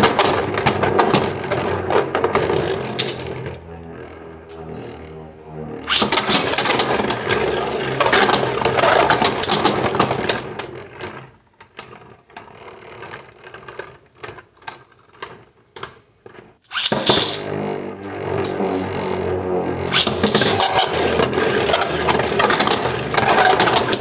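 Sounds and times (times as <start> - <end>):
spinning tops grinding together: 19.9 - 24.0.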